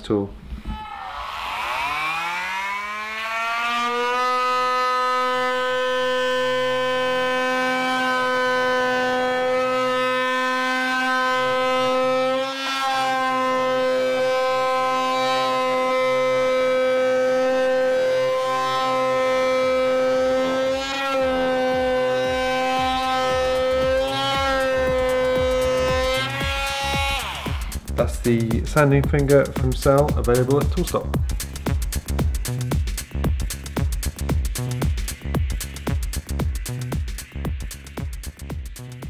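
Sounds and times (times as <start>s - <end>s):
multi-tool sanding whine: 0.8s - 28.0s.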